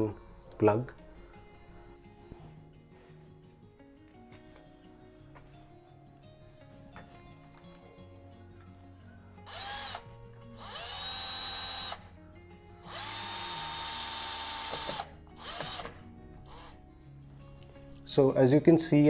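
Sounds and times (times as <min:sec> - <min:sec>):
power drill driving a screw: 0:09.5 - 0:10.0, 0:10.6 - 0:12.1, 0:12.8 - 0:16.8.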